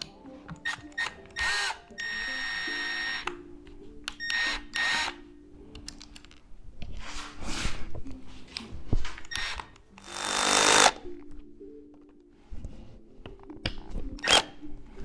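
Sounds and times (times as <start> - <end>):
quiet background music: 0.0 - 15.0
power drill whirring: 0.6 - 3.3, 4.2 - 5.2, 9.3 - 11.0.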